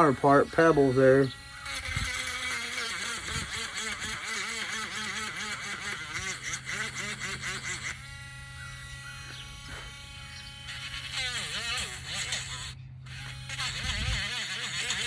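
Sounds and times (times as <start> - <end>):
electric sander motor whine: 0.0 - 15.0.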